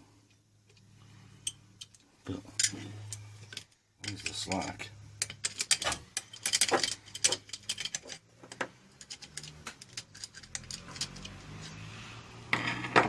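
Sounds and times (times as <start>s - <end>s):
metal tools clinking: 1.4s - 11.4s.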